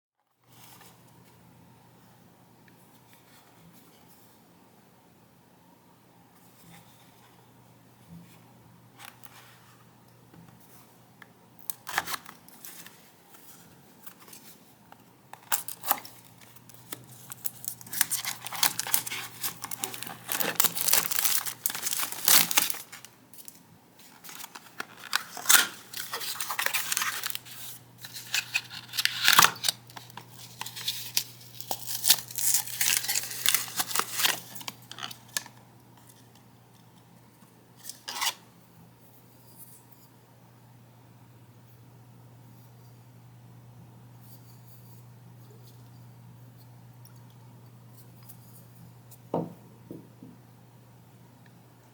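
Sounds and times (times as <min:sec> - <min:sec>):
packaging crinkling and tearing: 0:15.4 - 0:36.2.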